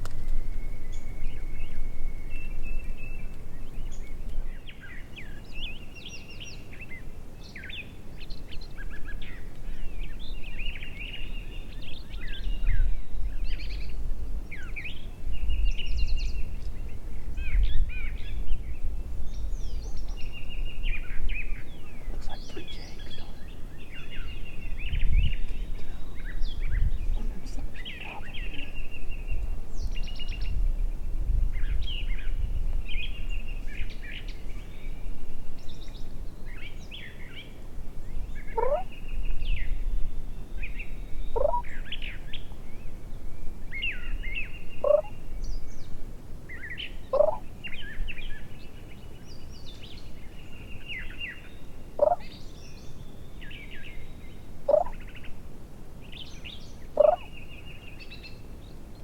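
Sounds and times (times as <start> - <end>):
songbirds chirping and trilling: 0.0 - 59.0
wind rumble on microphone: 0.0 - 59.0
turkey calls: 38.5 - 38.9, 41.3 - 41.8, 44.8 - 45.2, 47.1 - 47.5, 52.0 - 52.3, 54.7 - 55.1, 57.0 - 57.3.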